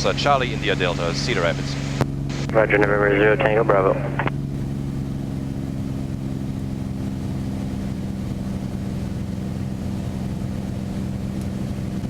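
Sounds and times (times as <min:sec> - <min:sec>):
propeller plane engine droning: 0:00.0 - 0:12.0.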